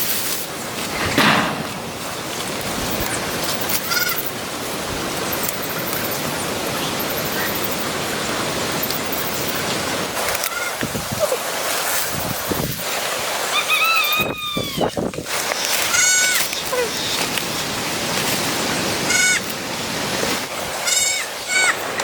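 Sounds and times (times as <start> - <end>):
steady rushing noise: 0.8 - 3.8.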